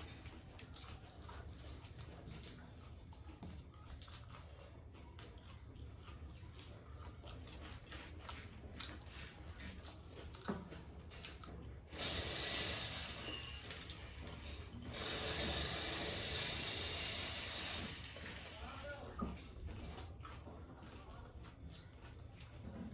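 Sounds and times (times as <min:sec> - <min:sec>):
chewing crunchy puffed rice: 0:00.0 - 0:22.9.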